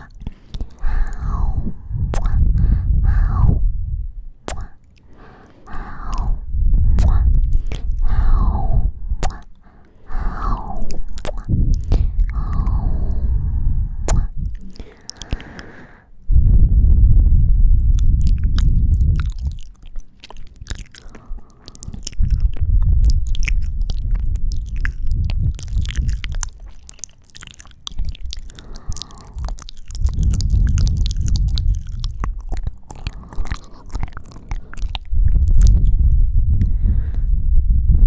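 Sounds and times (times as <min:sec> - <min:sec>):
wet kissing mouth sounds: 0:02.1 - 0:02.5, 0:04.5 - 0:05.1, 0:05.7 - 0:08.1, 0:09.2 - 0:09.6, 0:10.6 - 0:12.7, 0:14.1 - 0:15.7.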